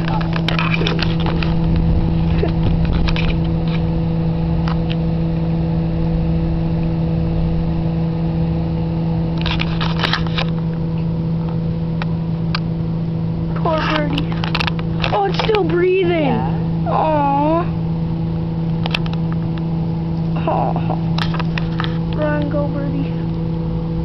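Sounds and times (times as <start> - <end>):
steady machine hum: 0.0 - 24.0.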